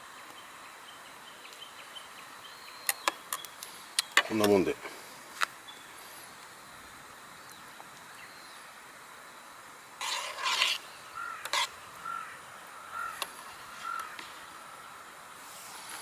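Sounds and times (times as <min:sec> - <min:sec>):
crow cawing: 0:11.2 - 0:14.4.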